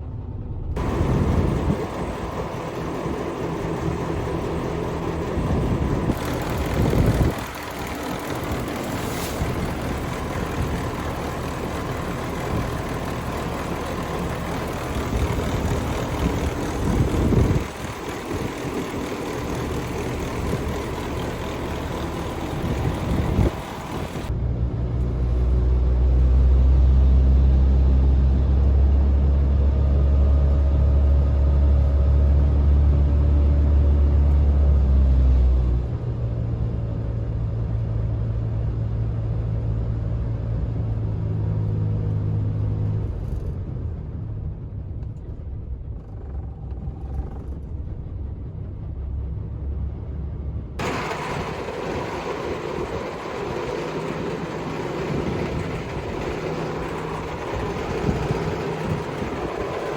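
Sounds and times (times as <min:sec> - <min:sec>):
truck diesel engine running: 0:00.0 - 0:24.4, 0:50.8 - 0:59.9.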